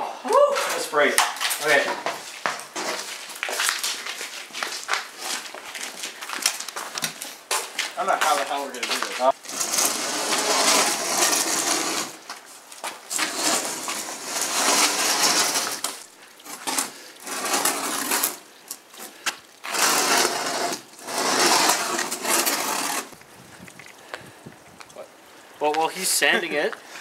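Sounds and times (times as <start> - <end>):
wood being sanded: 9.5 - 12.2, 13.2 - 15.8, 19.7 - 23.1.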